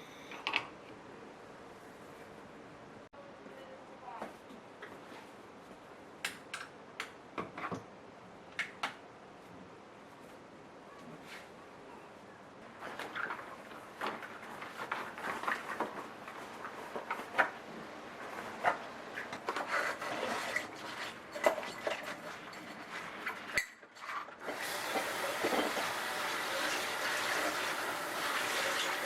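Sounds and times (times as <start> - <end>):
running water: 24.4 - 29.0
dishes and utensils clinking: 25.0 - 25.9.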